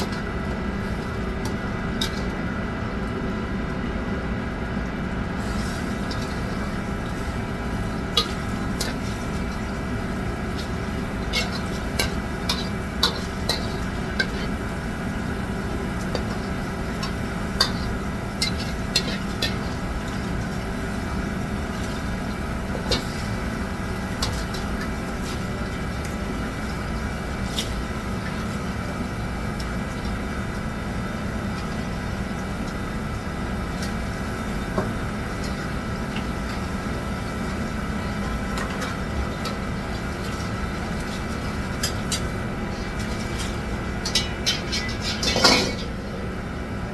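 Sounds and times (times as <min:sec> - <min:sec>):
steady droning hum: 0:00.0 - 0:46.9
dishes and utensils clinking: 0:43.0 - 0:46.0.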